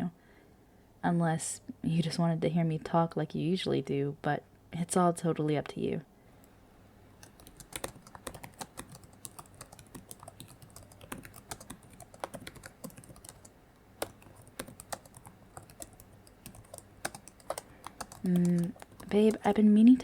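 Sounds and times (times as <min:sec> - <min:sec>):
faint low hum: 0:00.0 - 0:20.0
typing on laptop keyboard: 0:07.2 - 0:19.6.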